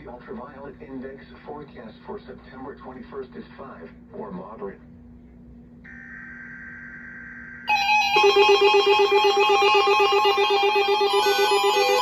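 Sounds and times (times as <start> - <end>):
warbling digital data burst: 5.9 - 9.6
alternating high and low notes: 5.9 - 12.0
buzzy trilling alert tone: 5.9 - 12.0.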